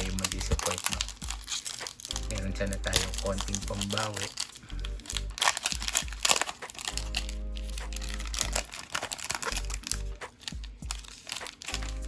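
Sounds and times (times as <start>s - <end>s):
background music with bass: 0.0s - 1.5s, 2.1s - 8.8s, 9.5s - 11.1s, 11.8s - 12.0s
foil wrapper crinkling and tearing: 0.0s - 12.0s.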